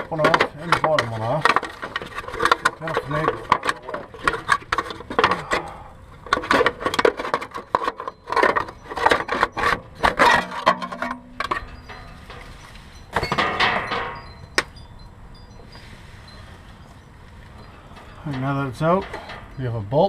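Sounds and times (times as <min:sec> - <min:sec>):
metal heat shield rattling and scraping: 0:00.0 - 0:14.8, 0:17.5 - 0:19.9
metallic ring: 0:07.5 - 0:20.0.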